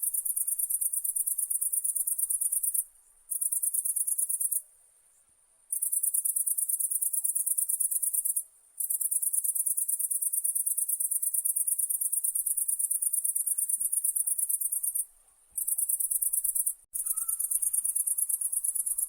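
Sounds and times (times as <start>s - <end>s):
insect high-pitched pulsed trill: 5.7s - 15.0s, 15.6s - 19.0s.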